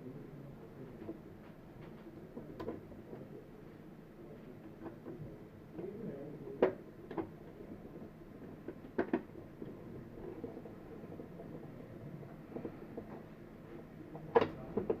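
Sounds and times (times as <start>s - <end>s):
hard objects clicking and knocking: 8.5s - 9.8s.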